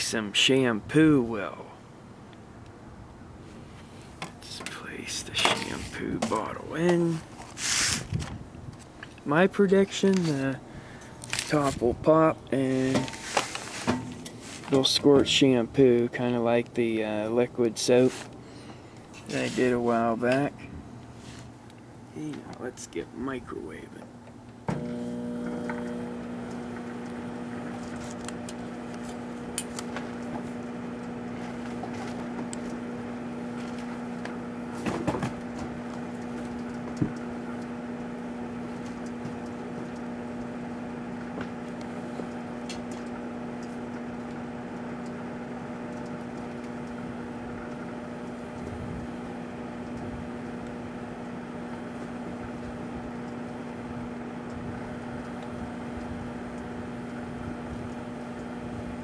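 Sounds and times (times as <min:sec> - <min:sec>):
microwave oven humming: 0:24.1 - 0:59.0.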